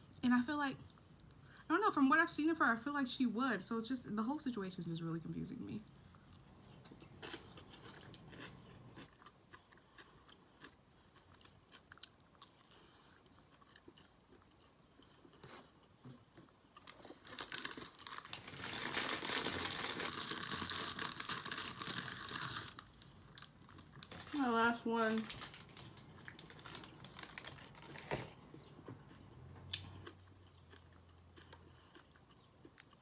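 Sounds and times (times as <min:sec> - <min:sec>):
person chewing food: 0:06.0 - 0:24.2, 0:25.3 - 0:33.0
dense crackling: 0:16.9 - 0:28.2.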